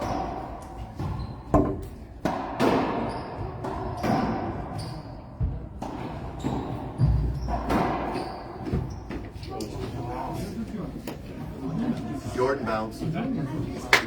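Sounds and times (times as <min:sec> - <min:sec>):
racquetball hits ringing in court: 0:01.0 - 0:04.6.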